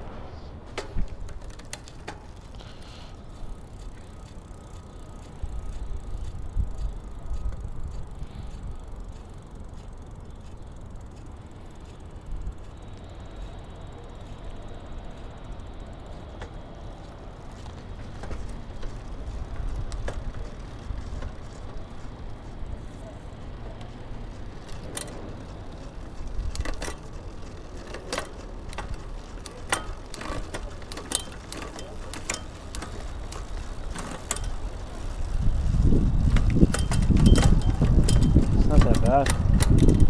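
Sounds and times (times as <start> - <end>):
bicycle drivetrain running: 0.0 - 40.0
handling clicks and knocks: 17.5 - 40.0.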